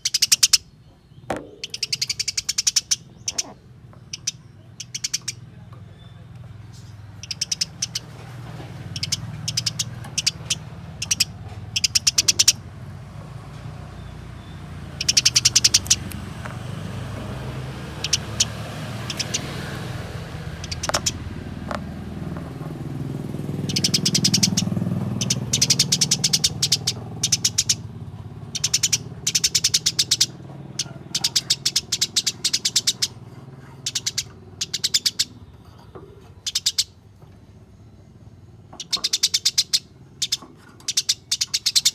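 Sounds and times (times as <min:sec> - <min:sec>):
sparrows chirping rapidly: 0:00.0 - 0:41.9.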